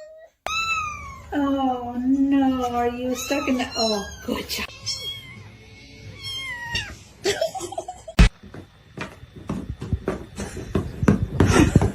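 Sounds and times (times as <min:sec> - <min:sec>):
cat meowing: 0:00.0 - 0:01.4, 0:02.5 - 0:07.0.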